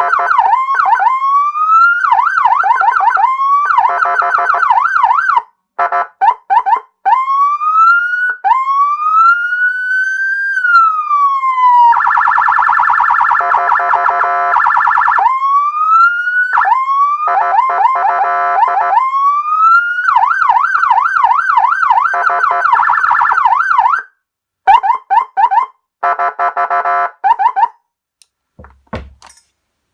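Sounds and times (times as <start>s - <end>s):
electronic police siren: 0.0s - 5.4s, 6.2s - 24.1s, 24.7s - 27.8s.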